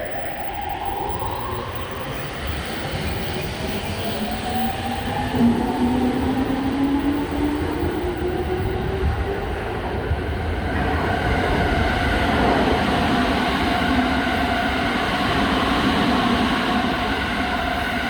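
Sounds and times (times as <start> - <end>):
wheels rumbling on rails: 0.0 - 18.0.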